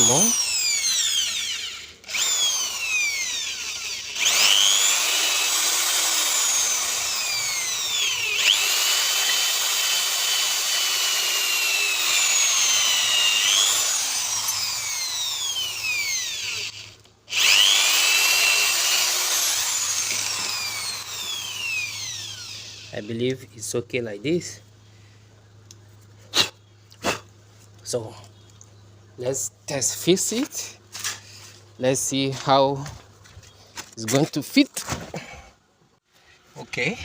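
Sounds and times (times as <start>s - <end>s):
electric drill whining: 0.0s - 23.0s.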